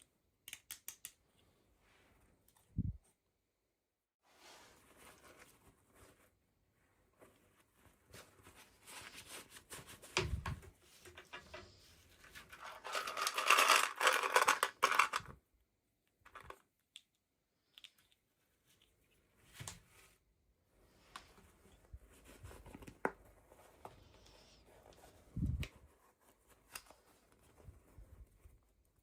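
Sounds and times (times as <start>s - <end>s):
packaging clicks and scratches: 12.5s - 15.3s.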